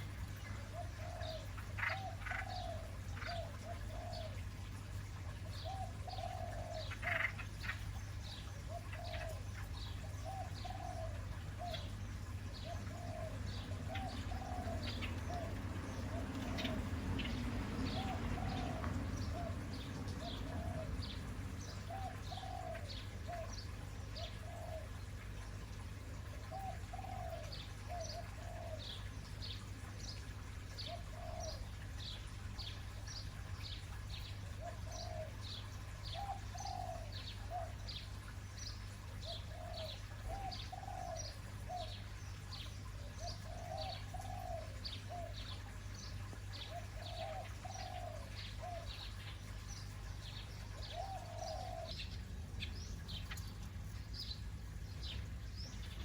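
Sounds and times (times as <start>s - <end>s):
lower bird calls: 5.5s - 25.4s.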